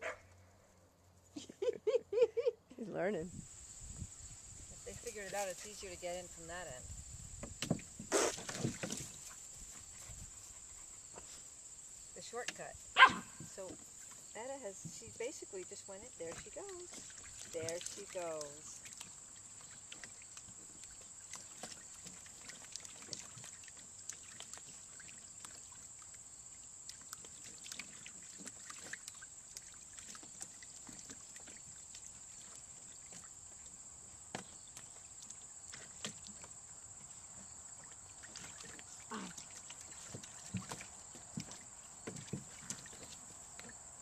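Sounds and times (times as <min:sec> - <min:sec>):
light splashing: 0:13.0 - 0:43.8.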